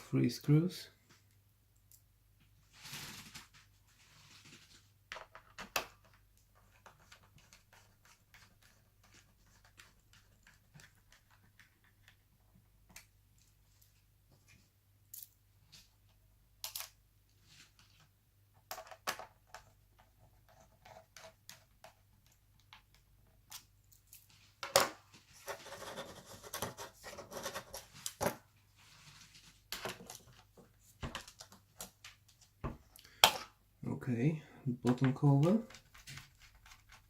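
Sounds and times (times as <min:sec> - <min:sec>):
scraping and rustling: 0:02.6 - 0:04.9.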